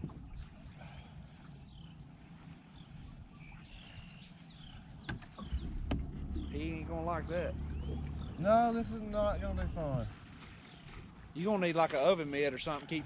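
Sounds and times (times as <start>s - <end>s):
small birds chirping: 0.0s - 11.5s
low steady rumble: 2.0s - 11.4s.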